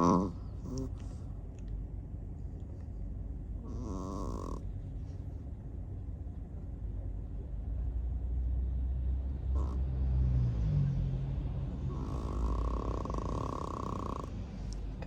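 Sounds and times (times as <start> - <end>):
dog snoring: 0.0 - 1.1, 3.6 - 4.7, 9.5 - 9.8, 11.8 - 14.4.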